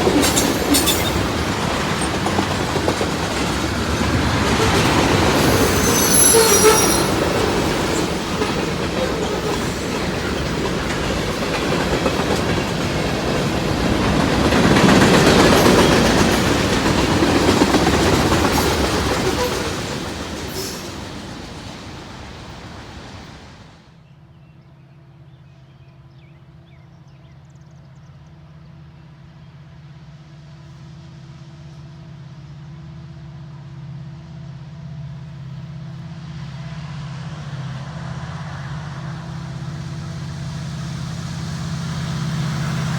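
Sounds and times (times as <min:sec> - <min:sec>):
wheels clacking on rails: 0:00.0 - 0:23.7
train rumbling past: 0:00.0 - 0:42.9
wheel squeal: 0:00.2 - 0:01.4, 0:04.6 - 0:10.6, 0:18.5 - 0:21.2
steady engine hum: 0:25.7 - 0:42.9.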